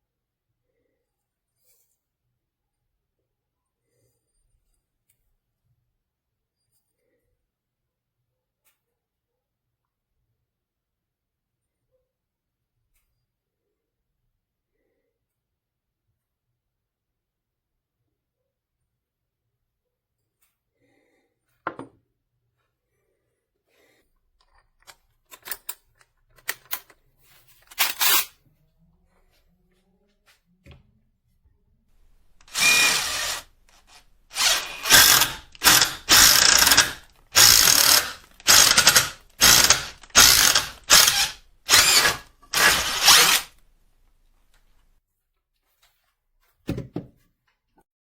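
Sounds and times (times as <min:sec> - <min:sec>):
power drill ratcheting bursts: 0:32.1 - 0:43.6.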